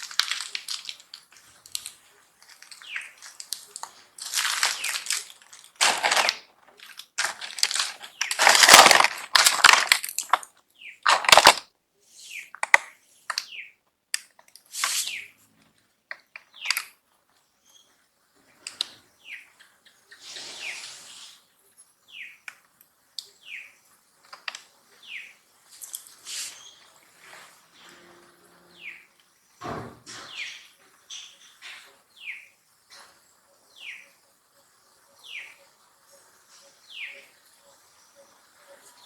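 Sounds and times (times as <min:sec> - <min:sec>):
high falling squeaks: 0:27.5 - 0:29.2.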